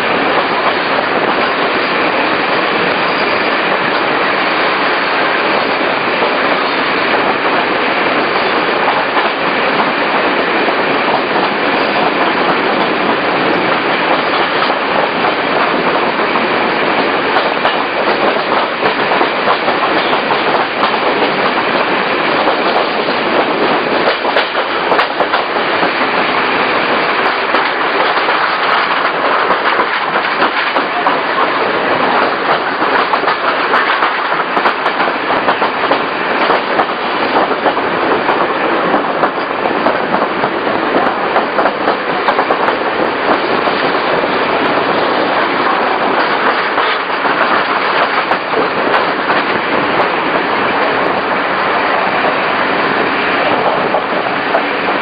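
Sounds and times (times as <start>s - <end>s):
train rolling on track: 0.0s - 55.0s
wheels clicking over rails: 10.8s - 51.3s.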